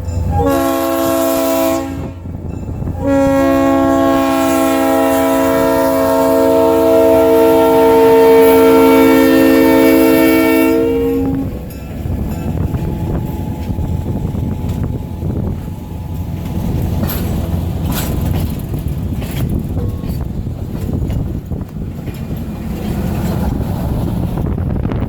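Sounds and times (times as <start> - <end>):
train rumbling past: 0.0 - 25.0
locomotive air horn: 0.3 - 11.8
wheels clicking over rails: 11.6 - 24.6.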